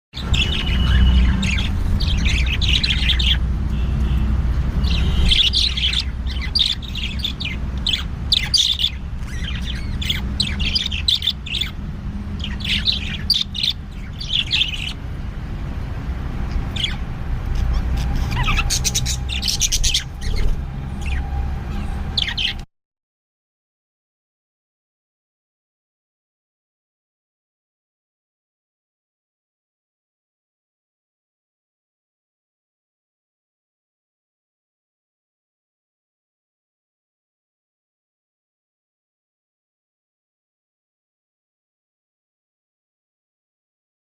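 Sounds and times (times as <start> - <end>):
lovebirds chirping and squawking: 0.2 - 22.7.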